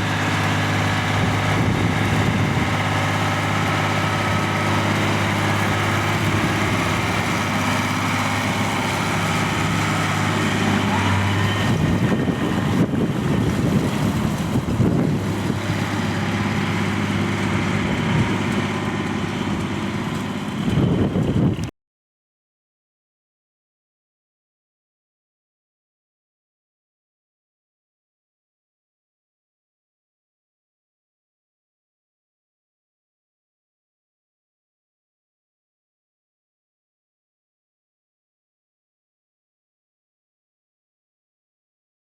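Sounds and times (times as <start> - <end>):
tractor diesel engine running: 0.0 - 21.7.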